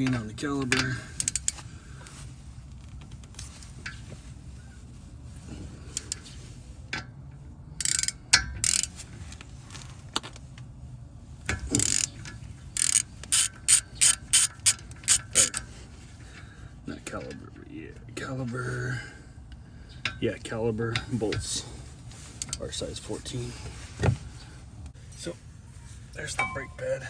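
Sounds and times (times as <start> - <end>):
hand ratchet clicking: 1.2 - 1.6, 7.8 - 9.0, 11.5 - 12.2, 12.8 - 15.7.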